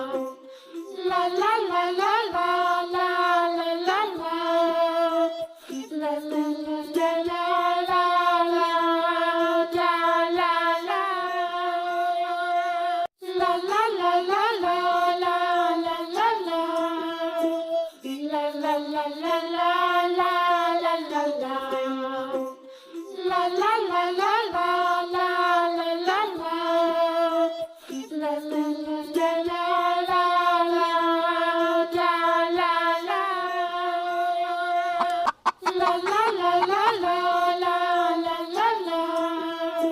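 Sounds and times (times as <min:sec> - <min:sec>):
high child-like singing voice: 0:34.4 - 0:39.9.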